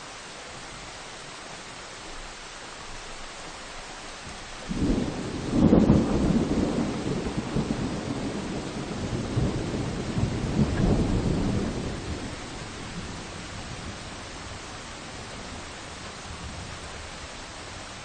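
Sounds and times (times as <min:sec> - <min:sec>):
steady rain: 0:00.0 - 0:18.0
thunder rumbling: 0:04.6 - 0:16.8.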